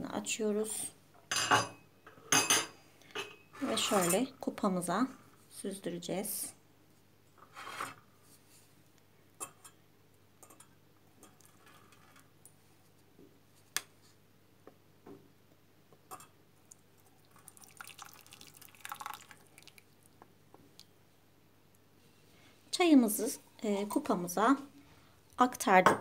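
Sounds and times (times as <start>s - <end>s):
tea dripping into a mug: 16.6s - 20.0s
tea pouring: 16.6s - 20.2s.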